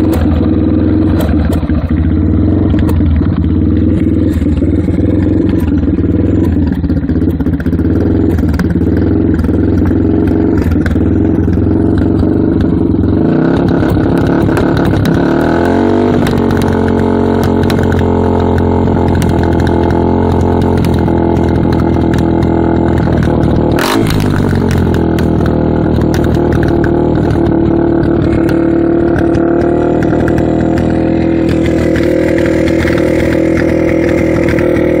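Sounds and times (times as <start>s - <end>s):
engine rough idle: 0.0s - 35.0s
sharp snap: 16.1s - 35.0s.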